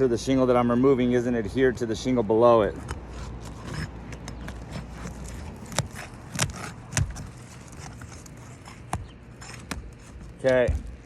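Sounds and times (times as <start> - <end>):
roof shingle scraping and crackling: 2.6 - 11.0
shingle seal snapping: 2.8 - 11.0.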